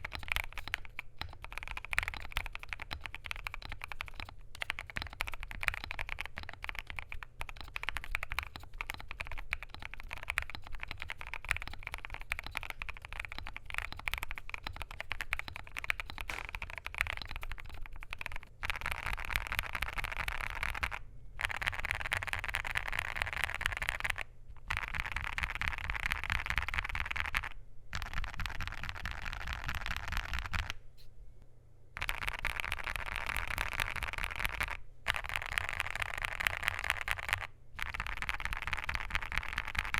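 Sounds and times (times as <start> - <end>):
steady low hum: 0.0 - 21.8
fast typing on mechanical keyboard: 0.0 - 30.8, 32.0 - 39.9.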